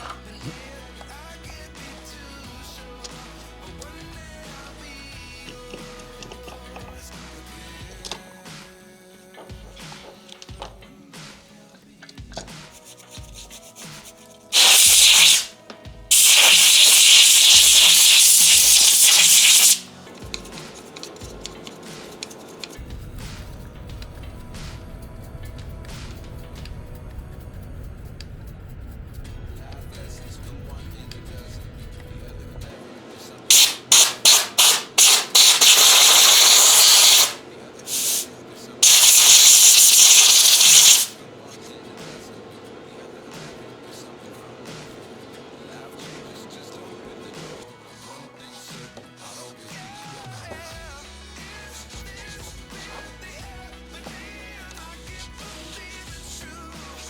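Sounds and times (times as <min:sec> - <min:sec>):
compressed air hissing blast: 0:14.5 - 0:15.5, 0:16.1 - 0:20.0, 0:33.5 - 0:41.2.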